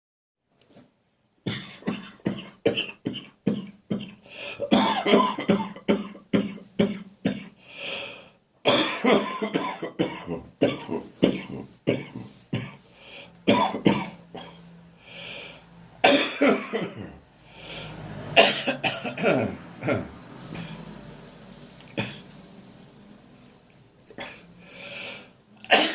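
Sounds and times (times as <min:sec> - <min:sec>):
person coughing harshly: 0:01.4 - 0:07.6, 0:08.7 - 0:12.8, 0:13.4 - 0:14.6, 0:16.0 - 0:17.2, 0:18.4 - 0:20.7, 0:22.0 - 0:22.2, 0:24.1 - 0:24.5, 0:25.6 - 0:25.9
breaths drawn in: 0:17.3 - 0:18.4, 0:19.8 - 0:25.4.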